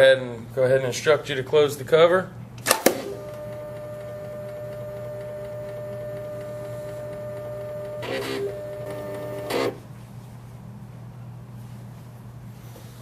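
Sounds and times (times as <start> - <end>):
printer motors whining: 2.7 - 9.8.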